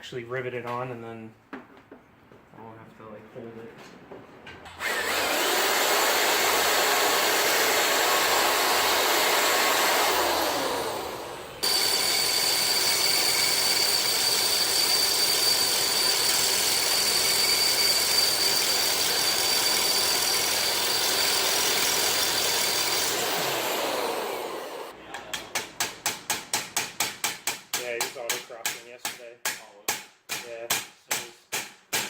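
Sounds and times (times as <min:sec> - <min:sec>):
power tool whining: 0:04.7 - 0:25.0
metal hammering strikes: 0:25.1 - 0:32.0.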